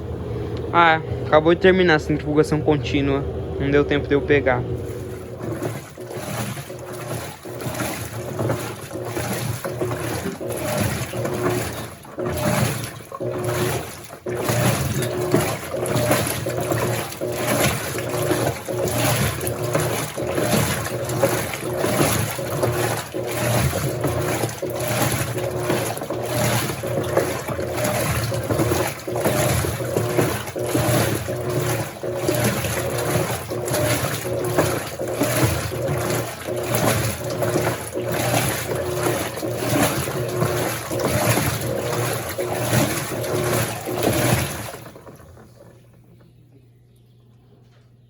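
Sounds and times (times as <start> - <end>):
washing machine water sloshing: 3.1 - 46.4.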